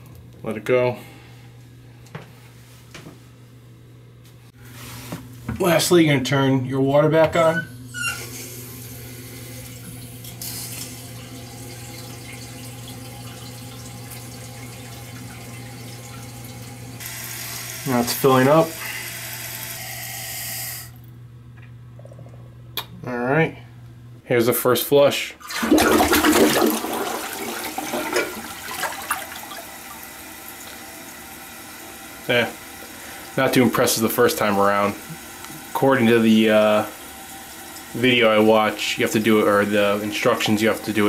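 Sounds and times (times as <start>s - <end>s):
water hissing into toilet tank: 8.0s - 21.0s, 25.4s - 41.0s.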